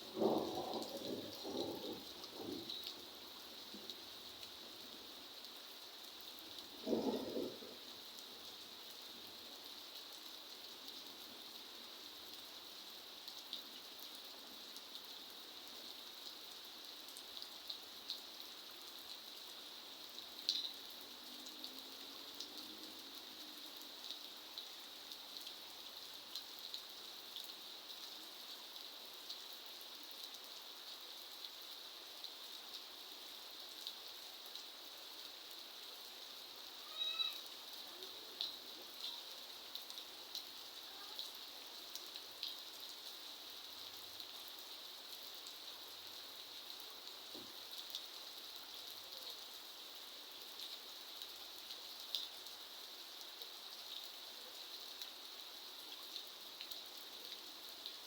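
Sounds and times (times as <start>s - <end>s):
steady rain falling: 0.0s - 58.0s
raindrops ticking: 0.1s - 3.0s.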